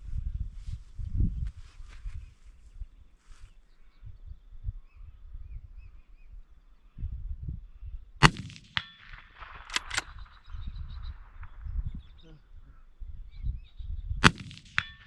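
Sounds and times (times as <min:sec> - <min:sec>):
wind rumble: 0:00.0 - 0:03.1, 0:04.0 - 0:14.3
sharp metallic clicks: 0:08.2 - 0:10.5
rifle shot: 0:08.2 - 0:11.8, 0:14.2 - 0:15.0.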